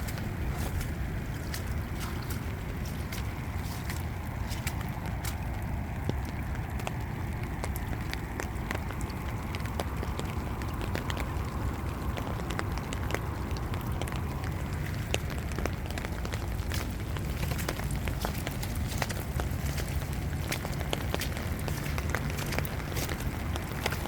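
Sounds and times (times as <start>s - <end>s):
rain falling: 0.0s - 24.0s
raindrops ticking: 0.0s - 24.0s.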